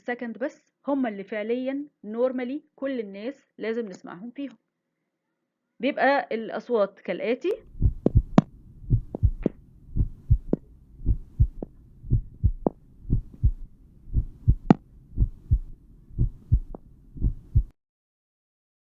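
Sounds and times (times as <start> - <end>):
faint low rumble: 7.6 - 17.7
heartbeat through stethoscope: 7.6 - 17.7.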